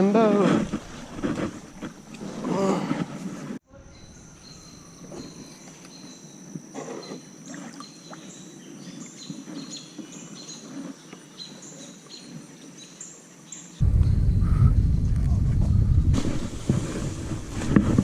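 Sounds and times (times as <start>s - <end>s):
paddle splashing water: 0.2s - 3.6s, 16.1s - 18.0s.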